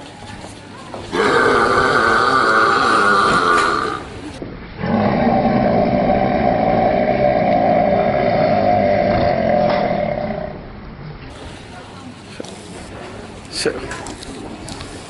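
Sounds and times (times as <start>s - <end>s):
man burping: 1.1s - 4.1s, 4.8s - 10.6s.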